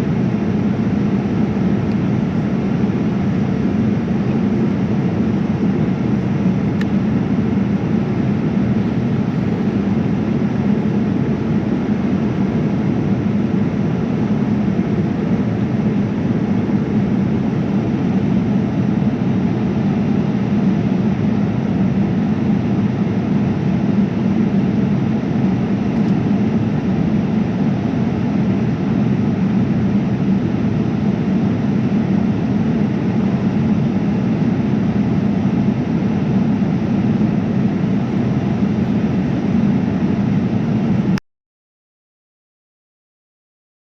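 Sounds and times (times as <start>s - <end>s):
airplane cabin engine rumble: 0.0s - 41.2s.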